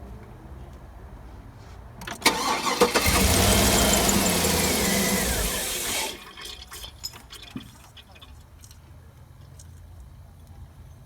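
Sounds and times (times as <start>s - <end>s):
starter cranking engine: 2.2s - 7.6s
car engine running: 2.4s - 6.4s.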